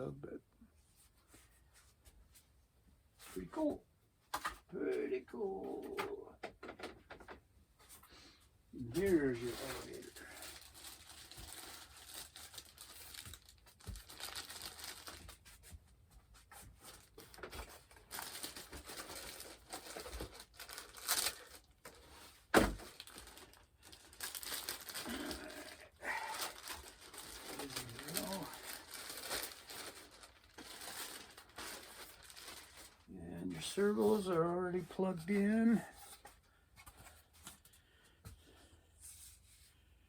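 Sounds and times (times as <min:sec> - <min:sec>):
plastic packaging crinkling and tearing: 0:09.0 - 0:15.4, 0:16.8 - 0:34.3.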